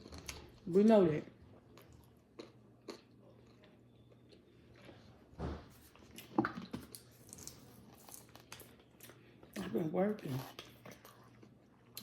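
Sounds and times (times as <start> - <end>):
person chewing food: 0.0 - 0.6, 1.5 - 5.2, 5.9 - 9.6, 10.4 - 12.0.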